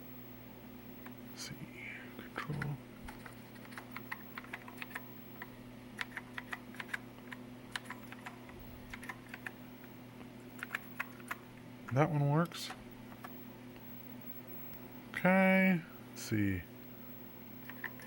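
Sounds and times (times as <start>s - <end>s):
steady low hum: 0.0s - 18.0s
keyboard keys clicking: 2.5s - 5.0s, 6.0s - 9.6s, 10.6s - 12.0s.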